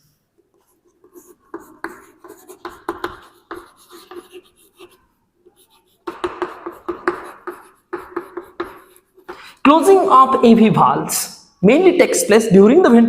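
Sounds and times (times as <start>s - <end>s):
writing scratching on a board: 0.4s - 9.6s.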